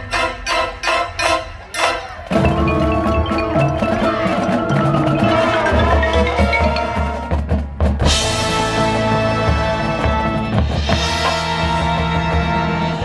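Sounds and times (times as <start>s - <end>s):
marching band playing: 0.0s - 13.0s
percussion strokes: 0.1s - 9.0s.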